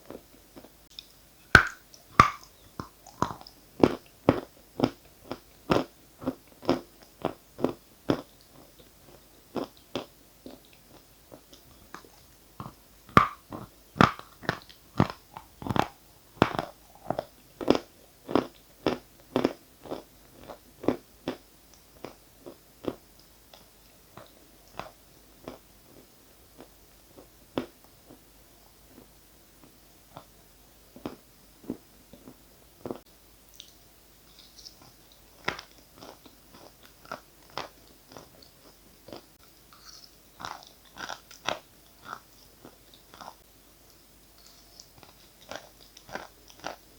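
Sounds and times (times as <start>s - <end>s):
crunching and chewing chalk: 0.0s - 28.2s, 33.6s - 46.9s.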